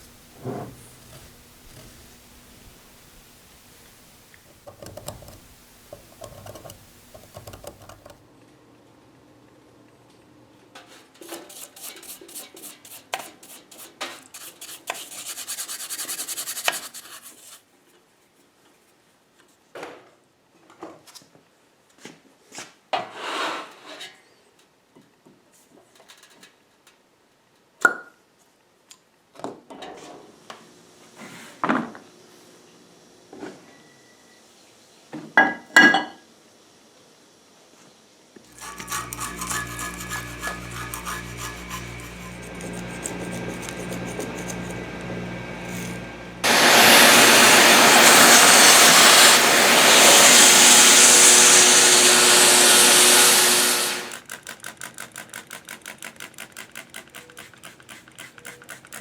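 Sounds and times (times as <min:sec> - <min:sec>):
rasping scrubbing strokes on metal: 0:00.0 - 0:08.2, 0:11.2 - 0:17.6, 0:38.5 - 0:54.4.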